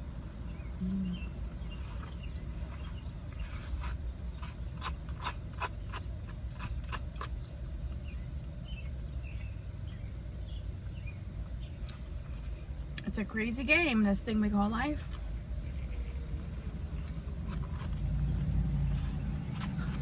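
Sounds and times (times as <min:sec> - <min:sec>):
spoon scraping plastic container: 0:01.7 - 0:07.3, 0:11.8 - 0:12.6, 0:14.9 - 0:15.3, 0:16.3 - 0:20.0.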